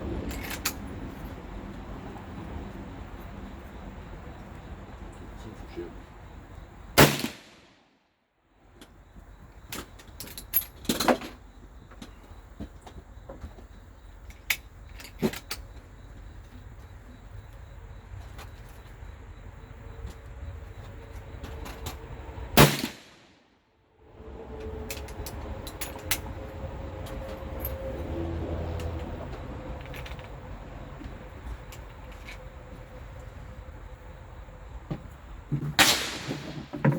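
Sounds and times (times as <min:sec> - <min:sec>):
gunshot: 0:07.0 - 0:07.8, 0:22.6 - 0:23.3, 0:35.8 - 0:36.6.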